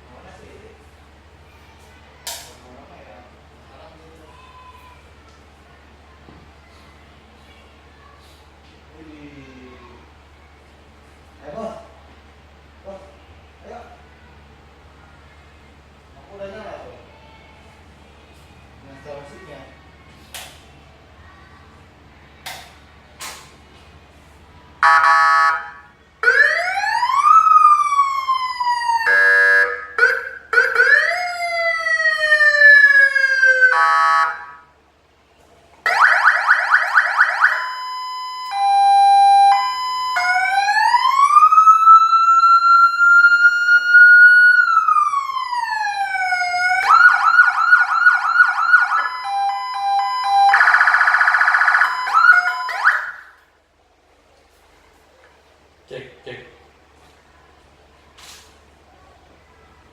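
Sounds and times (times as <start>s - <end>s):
electronic siren: 24.8s - 34.7s, 35.9s - 53.4s.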